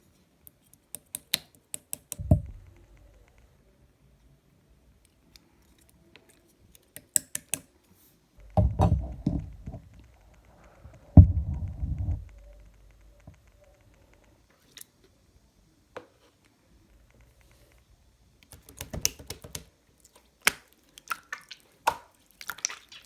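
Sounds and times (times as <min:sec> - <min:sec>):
slime squelching: 0:18.4 - 0:23.0.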